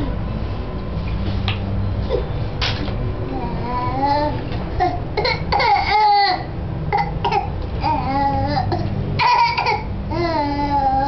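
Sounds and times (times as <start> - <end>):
baby coughing: 4.9 - 6.0, 6.9 - 7.5, 8.6 - 9.9.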